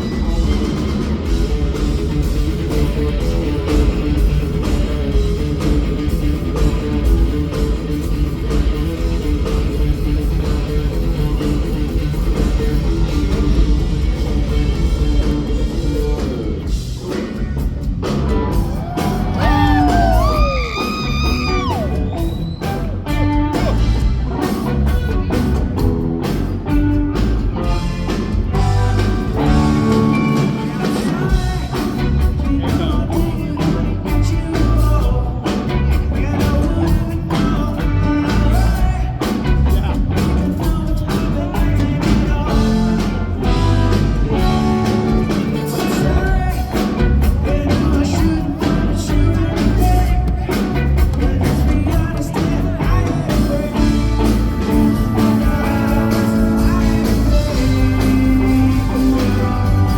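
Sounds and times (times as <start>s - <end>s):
rock band playing live: 0.0s - 59.9s
sung vocals: 18.4s - 24.7s, 28.5s - 59.9s.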